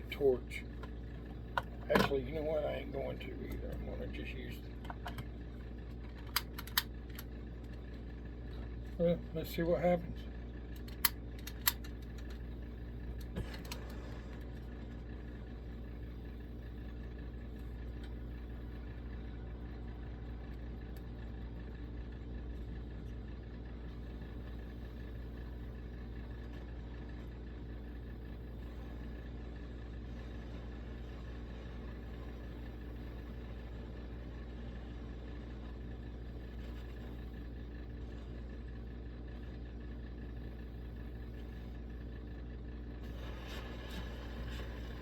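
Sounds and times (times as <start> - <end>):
sharp clicks: 6.2 - 7.3.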